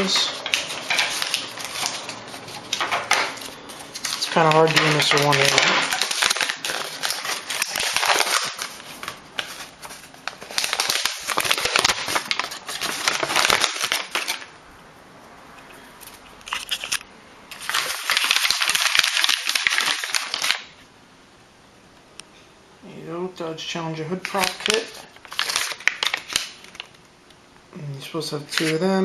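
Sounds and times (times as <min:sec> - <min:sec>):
packaging crinkling: 0:00.0 - 0:14.5, 0:16.0 - 0:20.8, 0:24.2 - 0:27.1, 0:28.4 - 0:28.9.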